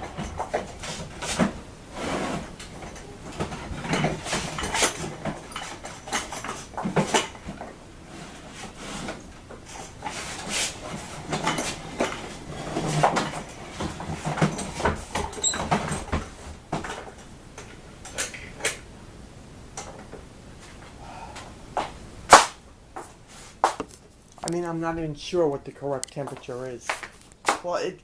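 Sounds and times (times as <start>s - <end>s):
household objects clattering: 0.0s - 17.3s.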